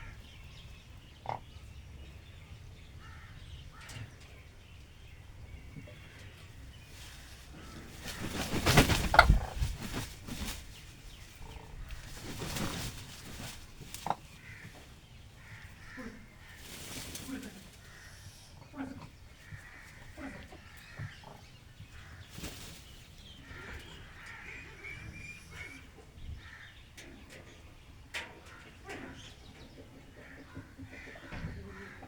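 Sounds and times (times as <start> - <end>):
wings flapping: 7.0 - 14.3, 16.6 - 17.4, 22.3 - 23.0.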